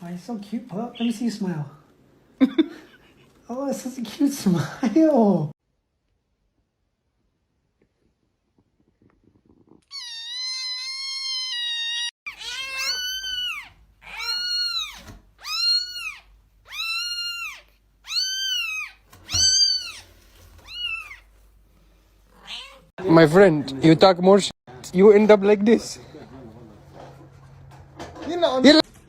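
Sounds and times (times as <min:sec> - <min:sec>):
cat meowing: 0:09.8 - 0:21.3, 0:22.3 - 0:22.9.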